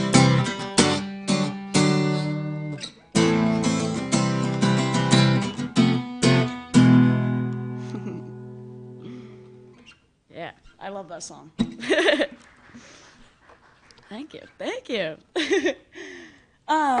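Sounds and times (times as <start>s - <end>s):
acoustic guitar strumming: 0.0s - 10.0s.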